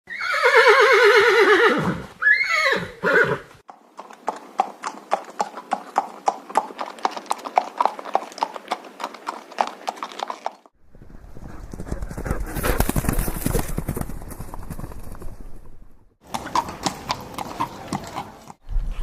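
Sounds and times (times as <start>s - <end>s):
horse whinnying: 0.1s - 3.6s
hoofbeats clip-clop: 3.7s - 19.0s.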